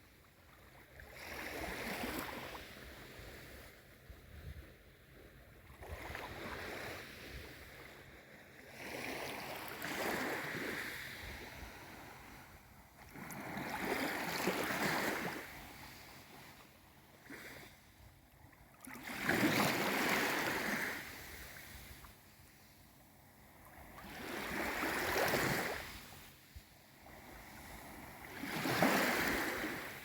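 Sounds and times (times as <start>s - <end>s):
small waves washing in: 4.7s - 18.0s, 18.8s - 22.2s, 23.6s - 26.4s, 27.0s - 30.0s.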